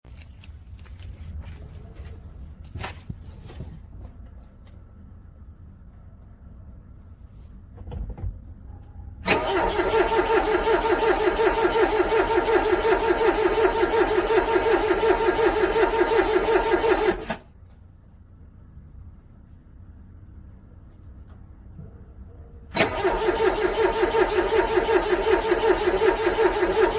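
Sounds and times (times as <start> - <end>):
car engine cranking on starter: 9.2 - 17.5, 22.7 - 26.9.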